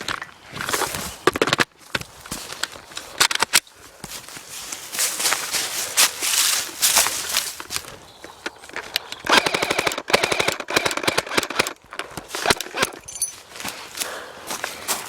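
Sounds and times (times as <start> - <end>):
airsoft guns firing: 9.2 - 11.8.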